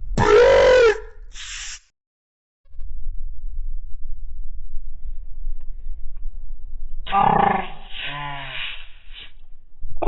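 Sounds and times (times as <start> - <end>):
harsh pitched vocal cry: 0.2 - 1.7
low rumble: 2.7 - 10.0.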